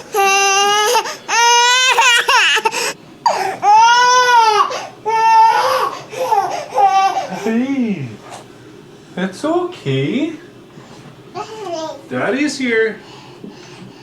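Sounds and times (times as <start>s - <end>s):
baby crying: 0.0s - 7.5s, 11.4s - 12.0s.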